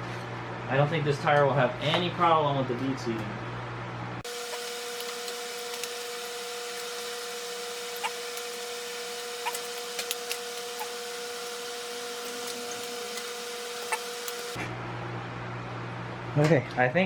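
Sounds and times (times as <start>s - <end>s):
constant hum: 3.2s - 14.7s
steady hiss: 4.3s - 14.6s.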